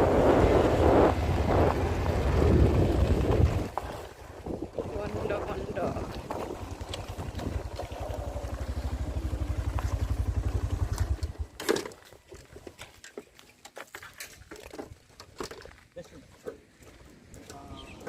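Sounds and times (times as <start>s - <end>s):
small engine throbbing: 0.0s - 11.6s.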